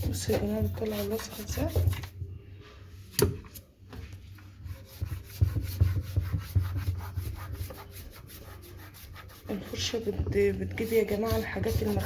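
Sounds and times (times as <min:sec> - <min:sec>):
toothbrush scrubbing: 0:00.0 - 0:02.1, 0:10.8 - 0:12.0.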